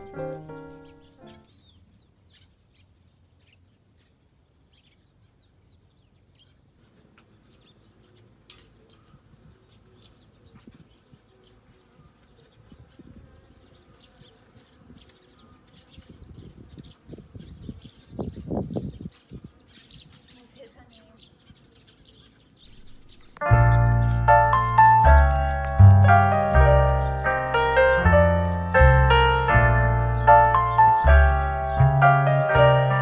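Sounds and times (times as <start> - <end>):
mallet percussion music: 0.0 - 1.4
bird chirps: 0.0 - 4.1, 13.8 - 33.0.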